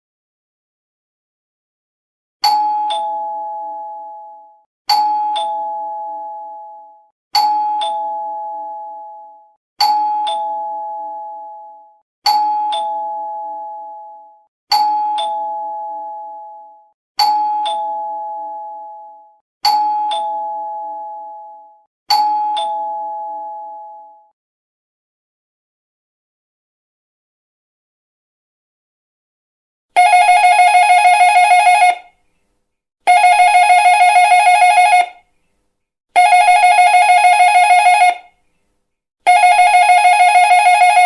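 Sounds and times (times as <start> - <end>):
two-tone doorbell chime: 2.4 - 24.3.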